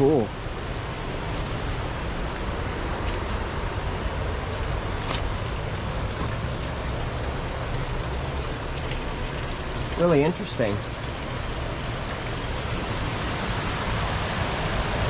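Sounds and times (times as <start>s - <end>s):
river rushing over rocks: 9.6s - 15.0s.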